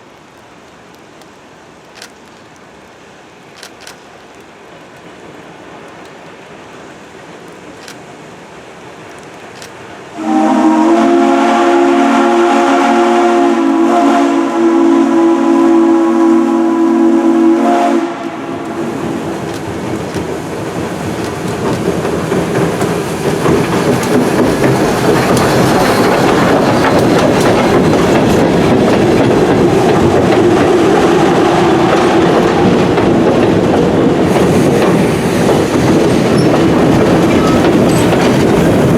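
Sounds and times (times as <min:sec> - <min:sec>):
train running past: 0:04.6 - 0:38.9
steam locomotive chime whistle: 0:10.2 - 0:18.7, 0:36.3 - 0:38.2.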